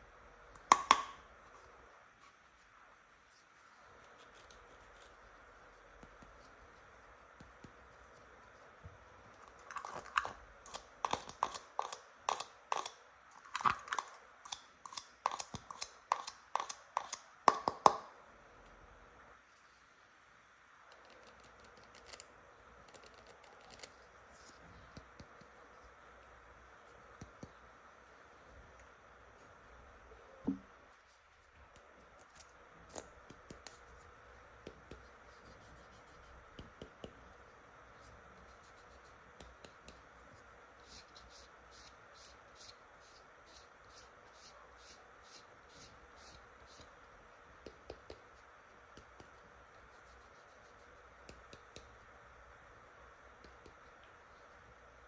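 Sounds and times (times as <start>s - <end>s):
plastic clicks and taps: 0.6s - 1.2s.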